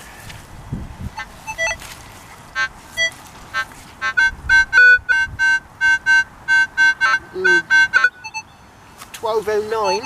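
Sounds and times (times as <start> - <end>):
metal detector beeping: 1.1 - 1.9, 2.5 - 8.6, 9.7 - 10.0.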